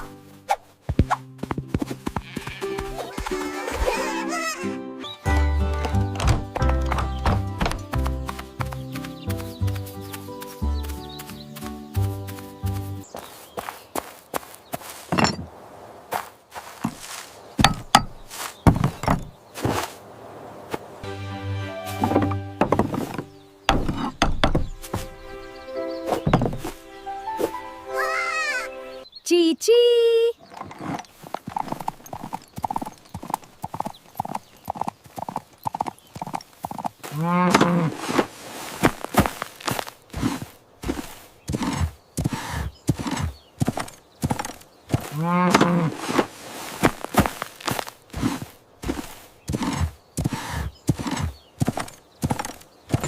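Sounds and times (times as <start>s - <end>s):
music: 0.0s - 13.0s, 21.0s - 23.7s, 24.8s - 29.0s
horse hooves clip-clopping: 0.8s - 4.1s, 5.3s - 15.4s, 30.7s - 53.0s
knocks and deep thuds: 17.6s - 19.3s, 22.0s - 25.2s.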